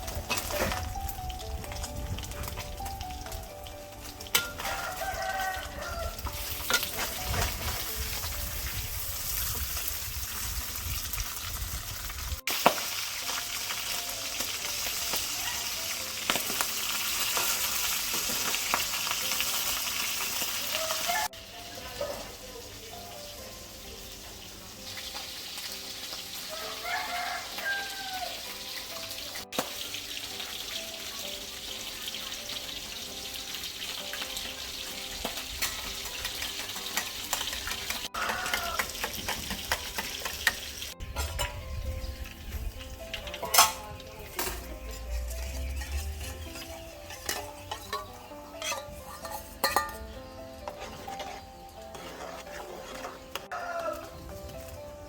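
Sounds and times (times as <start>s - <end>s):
food sizzling in hot oil: 0.0s - 55.0s
stirring in a pan: 25.0s - 41.6s, 43.0s - 54.7s.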